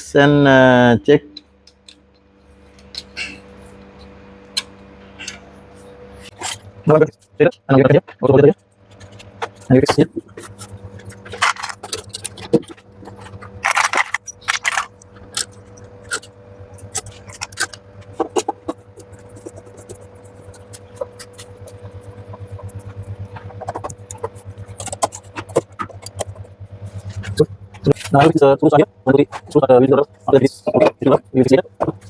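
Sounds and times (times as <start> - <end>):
steady low hum: 0.0 - 32.0
metal tools clicking and clinking: 8.9 - 28.3.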